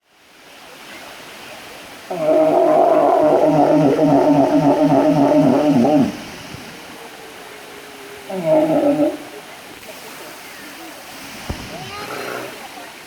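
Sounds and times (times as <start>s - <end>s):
walrus wavering call: 2.1s - 9.5s.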